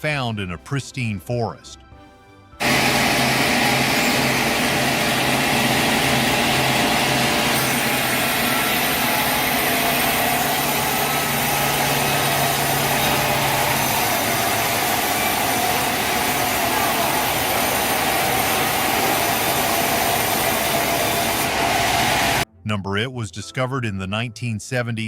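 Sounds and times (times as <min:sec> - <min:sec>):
machinery engine running: 0:02.6 - 0:22.4.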